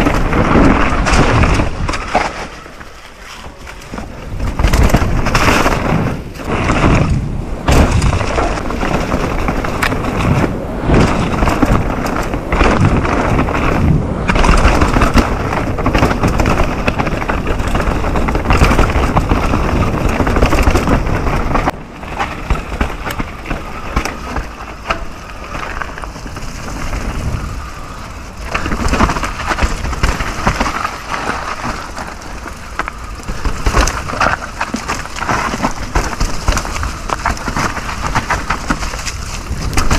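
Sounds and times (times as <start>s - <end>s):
bike knocking and rattling: 0.0s - 39.9s
bike tyres rumbling over dirt: 0.0s - 39.9s.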